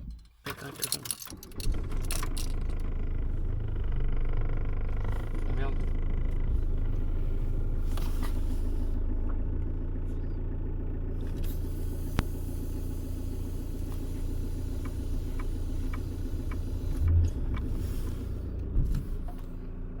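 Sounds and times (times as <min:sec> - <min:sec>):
diesel engine idling: 0:01.5 - 0:20.0
short thumps: 0:14.8 - 0:19.5.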